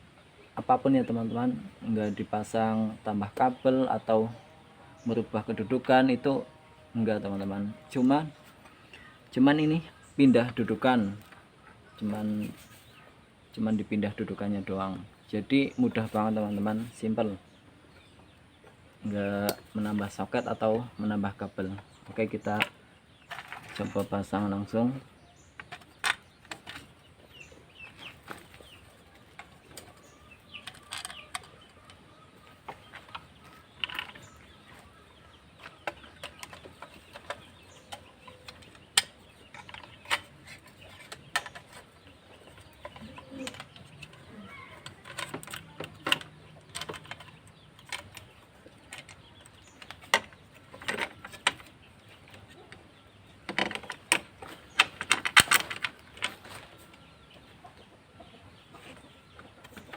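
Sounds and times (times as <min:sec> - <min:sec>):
hand tools clicking and knocking: 0:19.1 - 0:20.9, 0:25.5 - 0:52.8, 0:53.4 - 0:57.1.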